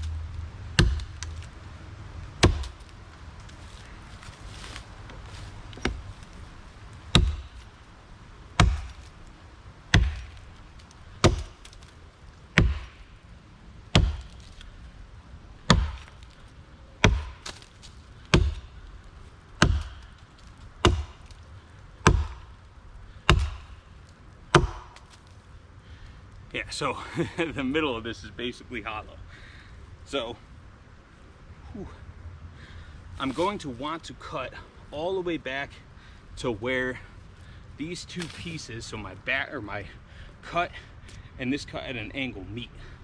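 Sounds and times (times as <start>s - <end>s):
axe chopping wood: 0.0s - 1.5s, 2.4s - 2.9s, 7.1s - 7.7s, 8.6s - 9.1s, 9.9s - 10.5s, 11.2s - 11.9s, 12.5s - 13.1s, 13.9s - 14.6s, 15.7s - 16.3s, 17.0s - 18.8s, 19.6s - 20.2s, 20.8s - 21.4s, 22.0s - 22.5s, 23.3s - 23.8s, 24.5s - 25.2s, 38.2s - 38.5s.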